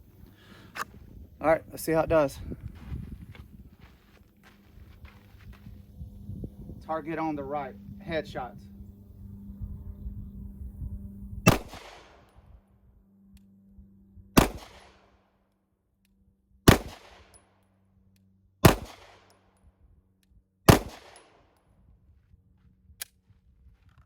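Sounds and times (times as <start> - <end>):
pistol shots with echo: 11.5 - 12.3, 14.4 - 15.1, 16.7 - 17.4, 18.6 - 19.3, 20.7 - 21.4.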